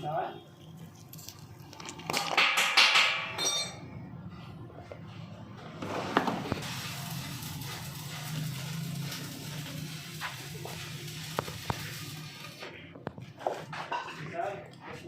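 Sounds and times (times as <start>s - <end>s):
metal tools clattering: 2.2s - 3.8s
ringing metal clink: 3.1s - 3.8s.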